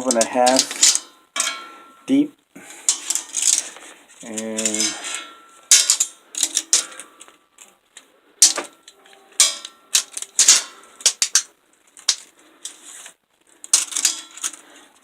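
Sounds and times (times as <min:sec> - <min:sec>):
steel pieces clanking together: 0:00.0 - 0:02.2, 0:02.9 - 0:07.1, 0:08.4 - 0:12.3, 0:13.7 - 0:14.6.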